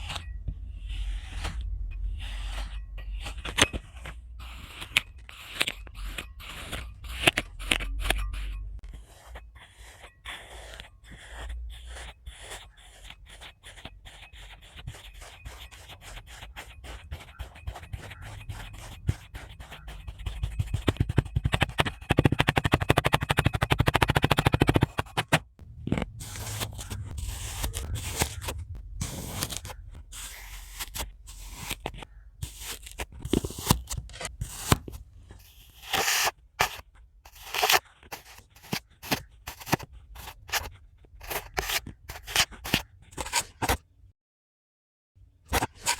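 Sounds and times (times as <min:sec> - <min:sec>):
blade cutting crunchy block: 0:20.7 - 0:43.8.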